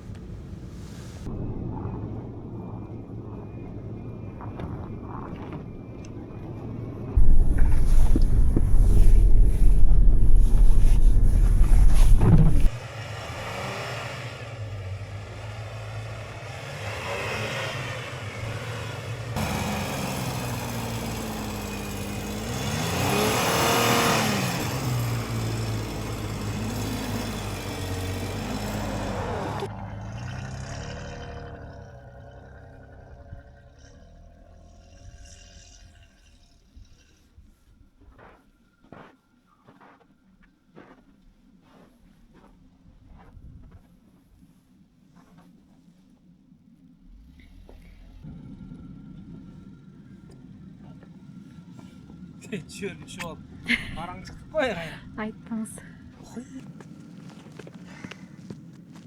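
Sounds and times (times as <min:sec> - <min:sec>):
car engine revving: 0:01.6 - 0:35.7, 0:47.0 - 0:59.0.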